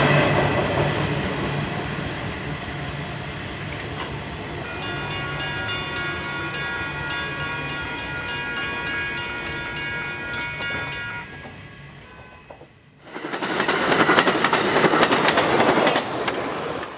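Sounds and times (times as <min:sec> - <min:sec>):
passing train rush: 0:00.0 - 0:16.9
railroad crossing bell ringing: 0:04.6 - 0:12.7.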